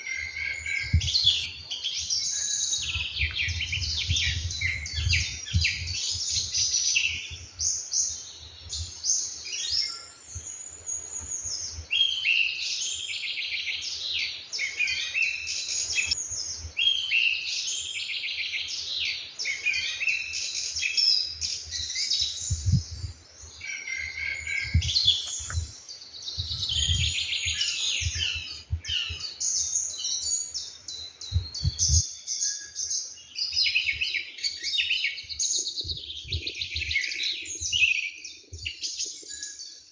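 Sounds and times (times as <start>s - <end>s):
songbirds singing and chirping: 0.0s - 39.9s.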